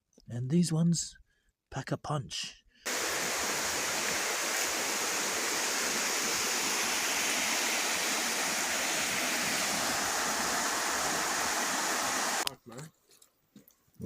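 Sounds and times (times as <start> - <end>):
water rushing: 2.9 - 12.4.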